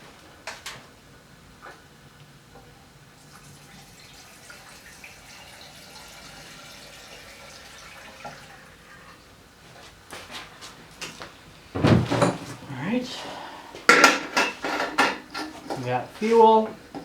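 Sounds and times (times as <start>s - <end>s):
gasoline pouring: 3.2s - 9.4s.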